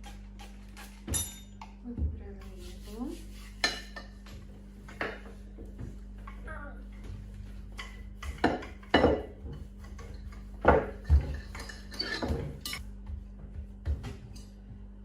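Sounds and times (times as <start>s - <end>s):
steady low hum: 0.0s - 15.0s
dishes and cutlery clinking: 3.6s - 5.3s, 7.7s - 12.8s.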